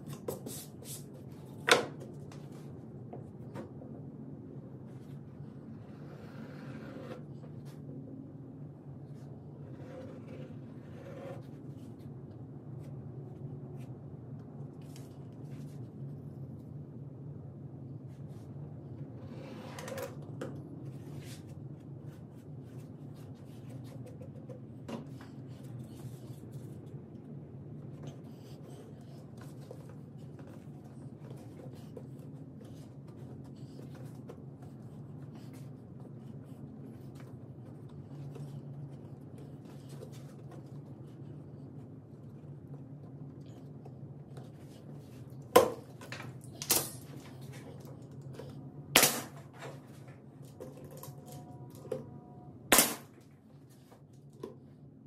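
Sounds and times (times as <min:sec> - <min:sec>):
steady low hum: 0:00.0 - 0:55.0
sharp loud bangs: 0:52.7 - 0:53.1.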